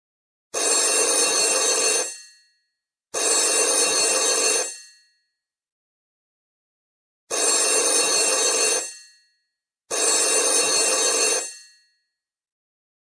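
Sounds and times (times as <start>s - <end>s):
telephone bell ringing: 0.6s - 2.5s, 3.2s - 5.2s, 7.3s - 12.2s.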